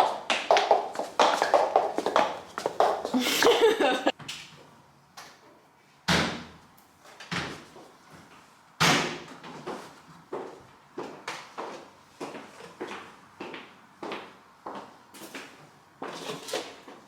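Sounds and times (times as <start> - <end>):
hard-soled shoes clacking: 0.0 - 3.2.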